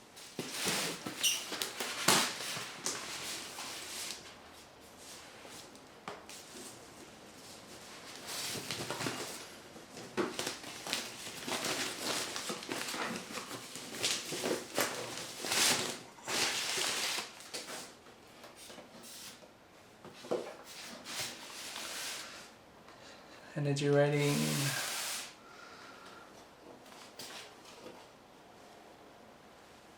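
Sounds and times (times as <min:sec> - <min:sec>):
wrapping and paper rustling: 0:00.2 - 0:19.4, 0:20.5 - 0:22.5.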